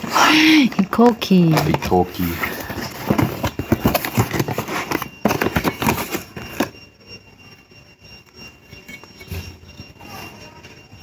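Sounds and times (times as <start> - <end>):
packaging rustling and clicking: 0.0 - 6.8.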